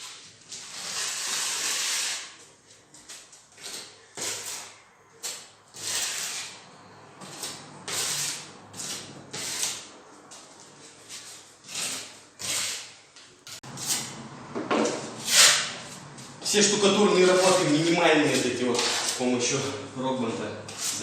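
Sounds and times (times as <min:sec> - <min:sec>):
metal spatula scraping plaster: 0:00.0 - 0:02.4, 0:03.6 - 0:06.6, 0:07.2 - 0:09.9, 0:10.9 - 0:14.2, 0:15.2 - 0:16.0, 0:17.1 - 0:19.8, 0:20.6 - 0:21.0.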